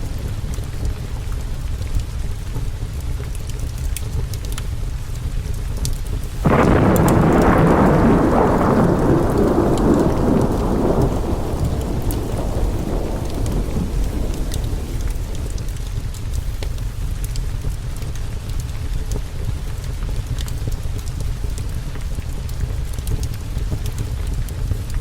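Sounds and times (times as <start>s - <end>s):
steady rain: 0.0s - 25.0s
thunderclap: 6.4s - 16.8s
low rumble: 6.4s - 16.9s.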